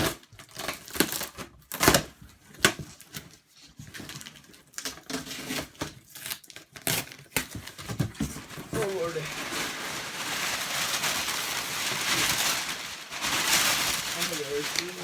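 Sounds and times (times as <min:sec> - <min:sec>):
cardboard packaging scraping and rustling: 0:00.0 - 0:15.0.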